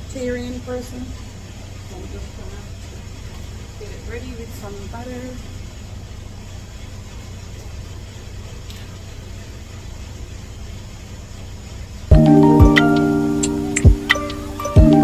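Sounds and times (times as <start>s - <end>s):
steady low hum: 0.0s - 15.0s
music with bell-like tones: 12.1s - 15.0s.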